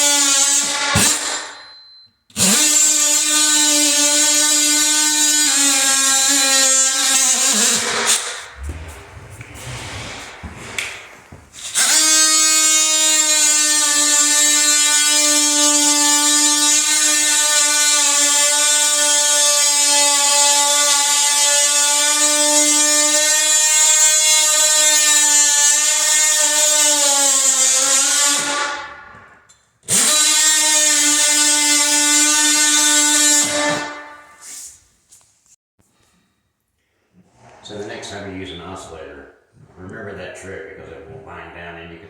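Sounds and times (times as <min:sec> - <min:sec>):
oscillating multi-tool buzzing: 0:02.4 - 0:08.6, 0:11.7 - 0:28.6.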